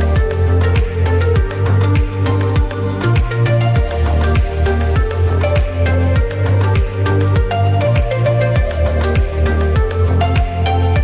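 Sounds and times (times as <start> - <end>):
electronic music with drum beat: 0.0 - 11.0.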